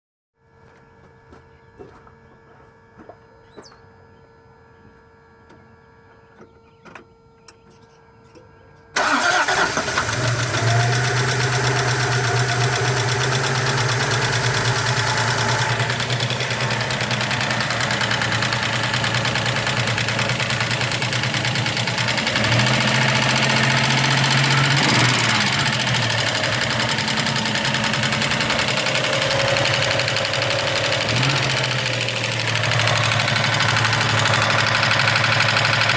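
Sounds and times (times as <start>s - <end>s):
car engine starting and idling: 8.9s - 35.9s
engine ticking: 9.0s - 35.9s.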